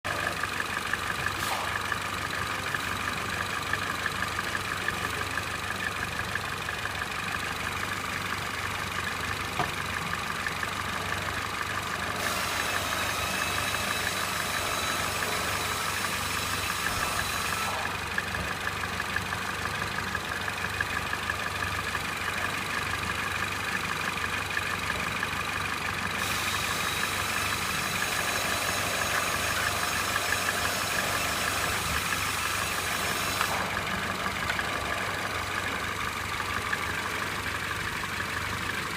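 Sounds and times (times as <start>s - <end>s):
car engine idling unevenly: 0.0s - 38.9s
fast rhythmic engine noise: 0.0s - 38.9s.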